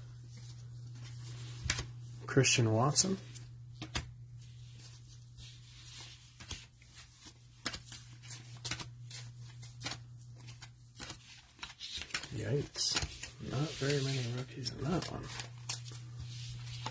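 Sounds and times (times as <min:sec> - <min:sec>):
trading cards flipped: 0:03.8 - 0:04.1, 0:06.3 - 0:14.0.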